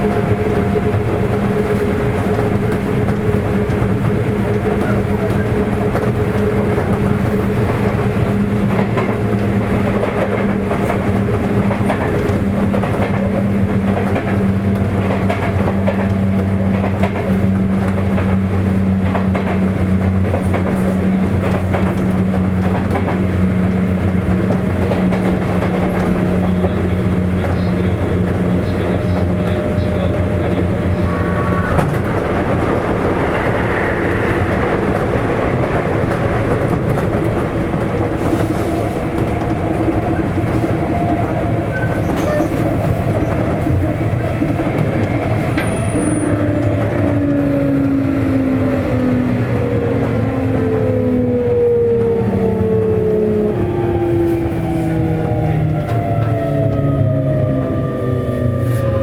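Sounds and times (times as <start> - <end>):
wheels clicking over rail joints: 0.0 - 34.1
train motor and inverter hum: 0.0 - 59.0
wheel and rail rumble: 0.0 - 59.0.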